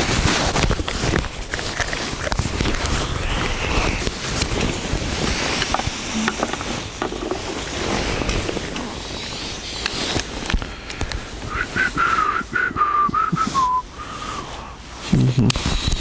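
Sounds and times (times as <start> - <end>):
person whistling: 11.5 - 14.5.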